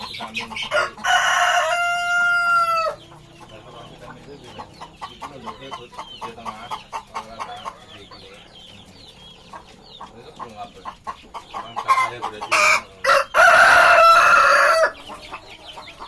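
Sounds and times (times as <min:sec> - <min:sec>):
chickens clucking and chirping: 0:00.0 - 0:16.0
rooster crowing: 0:00.7 - 0:03.0, 0:12.5 - 0:15.0.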